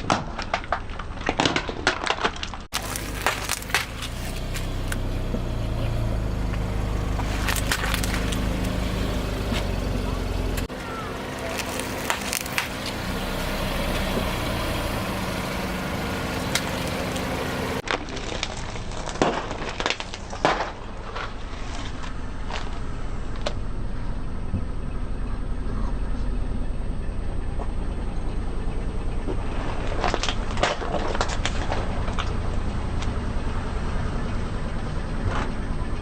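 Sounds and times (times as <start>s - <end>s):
sharp cracks and snaps: 0.0s - 5.0s, 7.2s - 8.8s, 11.4s - 13.0s, 16.4s - 22.8s
tyres crushing objects: 0.0s - 5.1s, 6.5s - 14.6s
car engine running: 2.7s - 17.8s, 20.6s - 36.0s.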